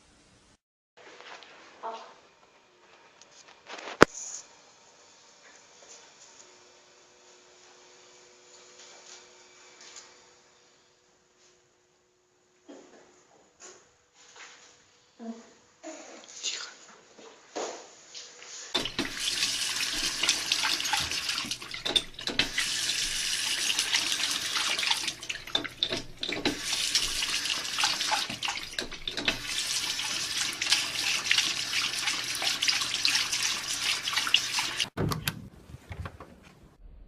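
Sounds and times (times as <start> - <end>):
water running from a tap: 18.8 - 35.0.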